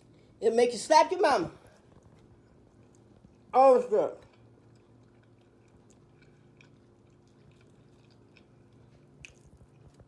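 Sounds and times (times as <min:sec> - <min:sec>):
low room hum: 0:00.0 - 0:10.0
person chewing food: 0:01.8 - 0:03.5, 0:04.2 - 0:10.0.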